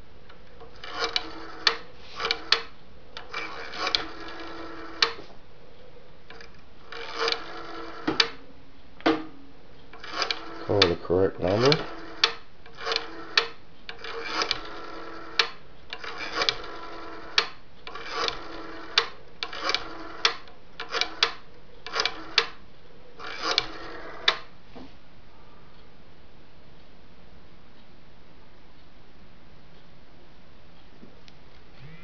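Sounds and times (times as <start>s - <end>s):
payphone dial clicks: 0.6s - 5.2s, 6.3s - 8.4s, 10.0s - 22.6s, 23.2s - 24.5s.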